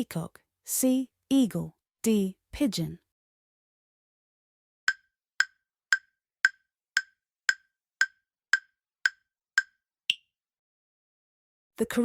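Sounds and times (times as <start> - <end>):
timer ticking: 4.9 - 10.2.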